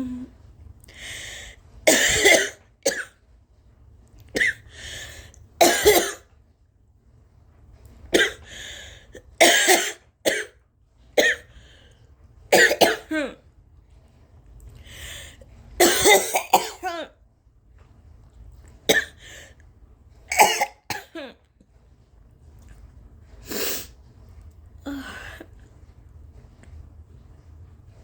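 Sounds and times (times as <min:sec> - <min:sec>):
woman coughing: 0:01.9 - 0:03.1, 0:04.4 - 0:04.6, 0:05.6 - 0:06.2, 0:08.2 - 0:08.4, 0:09.4 - 0:10.5, 0:12.5 - 0:13.4, 0:15.8 - 0:17.1, 0:18.9 - 0:19.2, 0:20.3 - 0:21.4.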